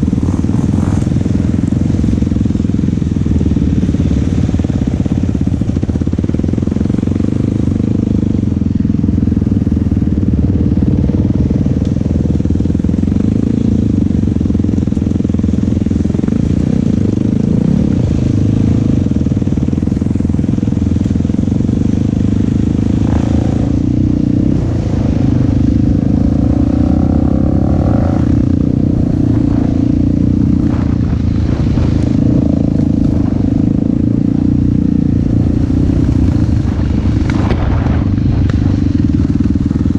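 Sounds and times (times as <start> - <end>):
quad bike engine running: 0.0 - 39.9.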